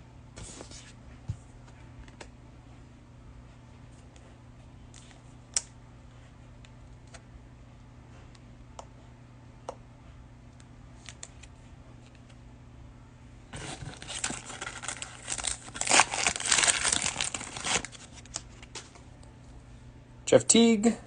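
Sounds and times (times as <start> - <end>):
plastic wrapper tearing and crinkling: 13.6 - 18.8.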